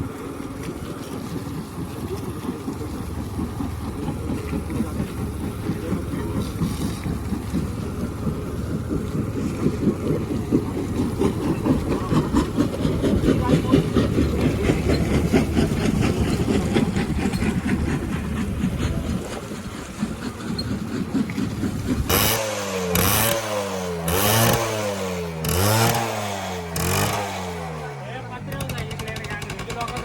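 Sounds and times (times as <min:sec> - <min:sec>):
two-stroke motorcycle engine revving: 0:20.5 - 0:30.0.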